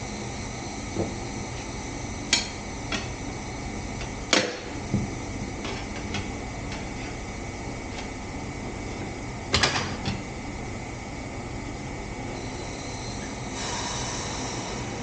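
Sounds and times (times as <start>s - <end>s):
shop fan running: 0.0s - 15.0s.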